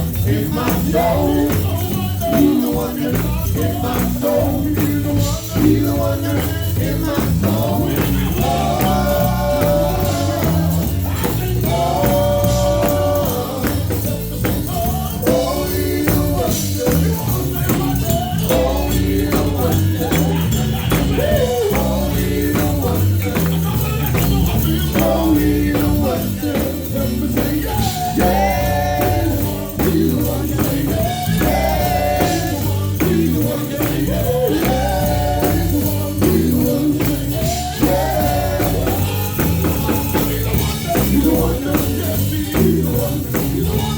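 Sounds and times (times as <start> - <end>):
heavy bass line: 0.0 - 43.9
tambourine: 0.0 - 43.9
voices singing gospel: 0.0 - 43.9.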